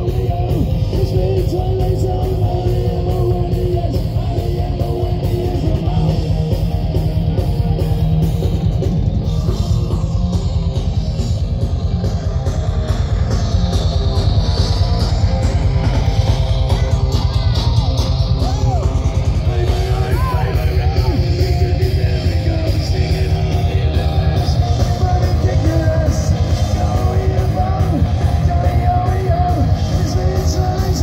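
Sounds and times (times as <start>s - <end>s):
punk rock band playing: 0.0s - 31.0s.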